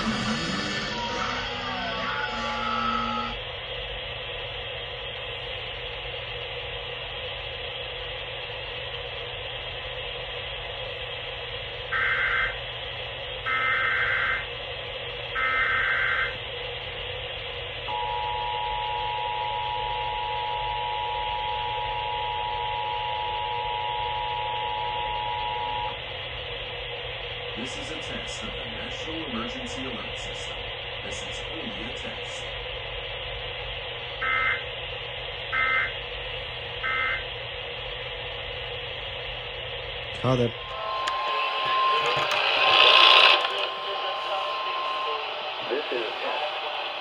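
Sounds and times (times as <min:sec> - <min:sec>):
data bursts: 0:00.0 - 0:03.4, 0:40.6 - 0:47.0
radio hiss: 0:40.3 - 0:47.0
two-tone alert signal: 0:40.6 - 0:47.0.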